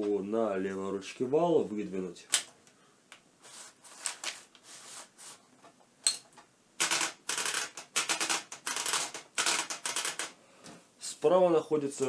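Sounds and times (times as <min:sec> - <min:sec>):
typewriter mechanism clicking: 0:06.8 - 0:10.3.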